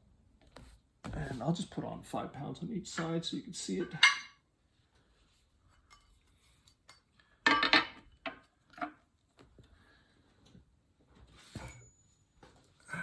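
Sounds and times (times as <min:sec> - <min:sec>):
metal weight plates clinking: 0:03.8 - 0:04.4.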